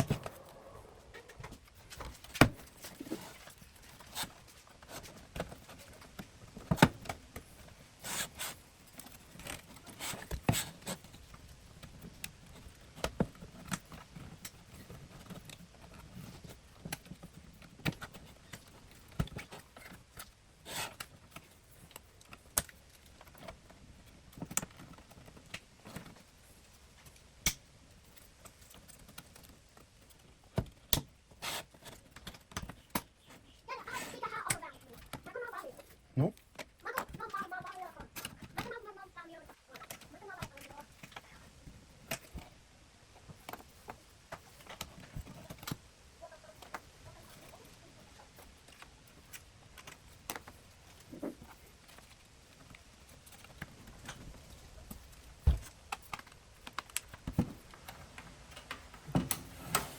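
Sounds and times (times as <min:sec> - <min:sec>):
tools clicking and scraping plastic: 0:00.0 - 0:59.9.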